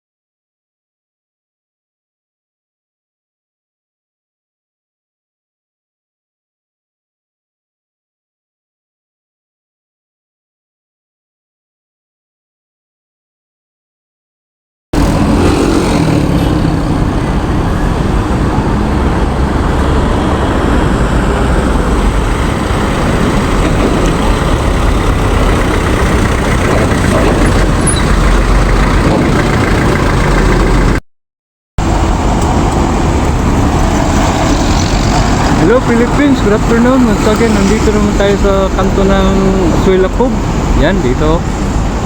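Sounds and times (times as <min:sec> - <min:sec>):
road traffic rumble: 0:15.0 - 0:31.0, 0:31.8 - 0:42.0.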